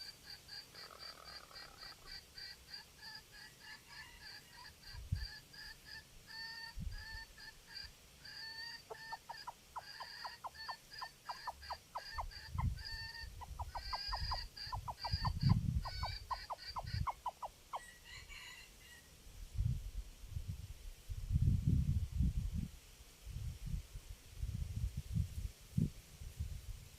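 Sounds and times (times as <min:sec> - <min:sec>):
junglefowl clucking calls: 0:00.0 - 0:19.1
wind rumbling on microphone: 0:06.7 - 0:07.2, 0:12.2 - 0:17.2, 0:19.4 - 0:26.9.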